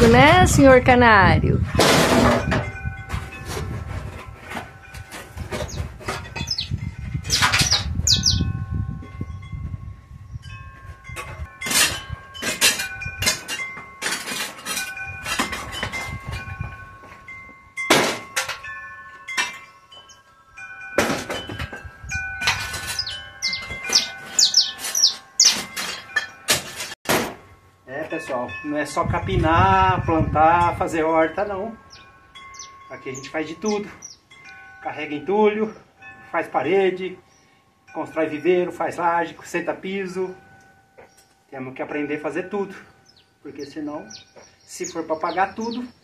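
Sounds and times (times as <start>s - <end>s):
wind chimes ringing: 2.3s - 46.0s
finches chirping: 5.6s - 8.5s, 22.4s - 26.0s, 31.9s - 34.3s, 43.0s - 46.0s.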